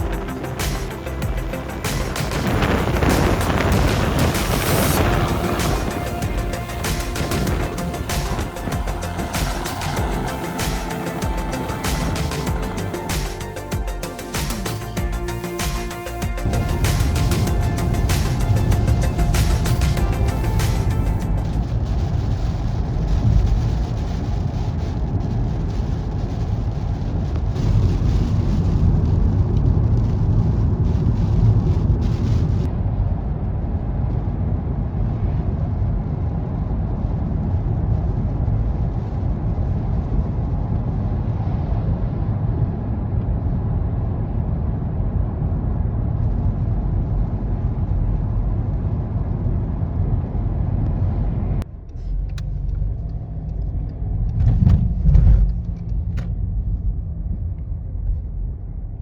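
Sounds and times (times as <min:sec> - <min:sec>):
moving vehicle rumble: 0:45.0 - 0:59.0.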